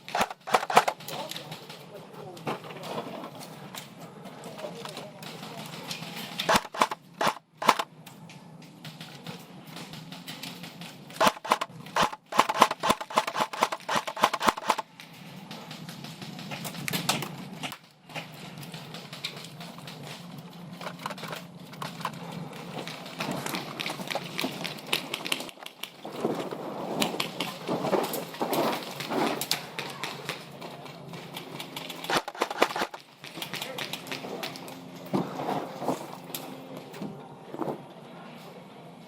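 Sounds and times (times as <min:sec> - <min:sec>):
airsoft guns firing sharp clicks: 0:00.0 - 0:01.4, 0:06.4 - 0:07.9, 0:11.2 - 0:14.9, 0:31.9 - 0:34.1.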